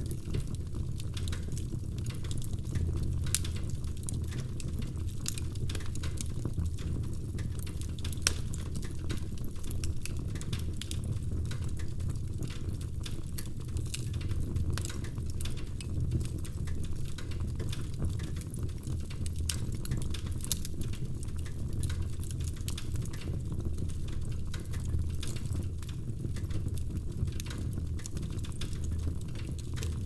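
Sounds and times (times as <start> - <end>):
wood fire crackling: 0.0 - 30.0.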